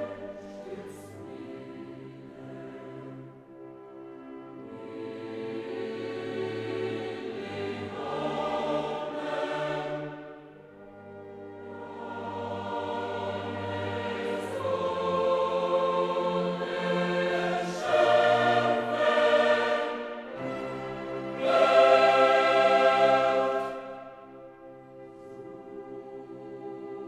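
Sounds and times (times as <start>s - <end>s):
choir singing held chords: 0.0s - 27.0s.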